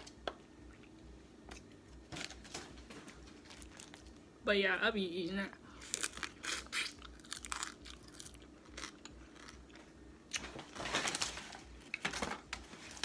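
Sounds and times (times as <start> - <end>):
chewing and crunching shellfish: 5.8 - 10.4.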